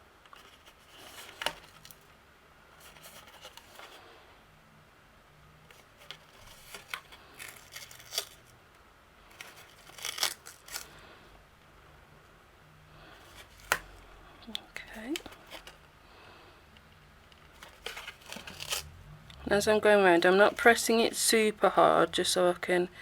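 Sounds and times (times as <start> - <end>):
cardstock rustling: 0.3 - 2.1, 2.8 - 4.0, 5.7 - 8.5, 9.3 - 11.0, 13.2 - 14.0, 14.8 - 15.8, 17.5 - 18.9.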